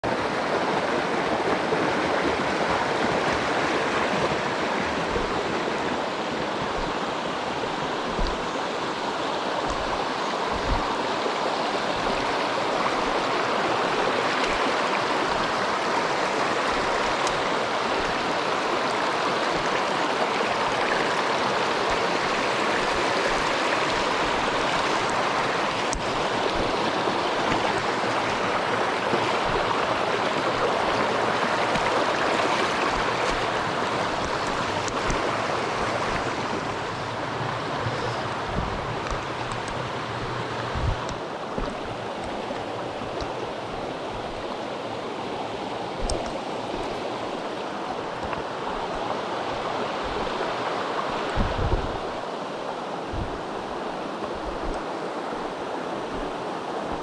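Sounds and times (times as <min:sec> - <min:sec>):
stream rushing over rocks: 0:00.0 - 0:57.0
soft low thumps: 0:09.7 - 0:11.0, 0:37.9 - 0:39.2, 0:40.2 - 0:41.9.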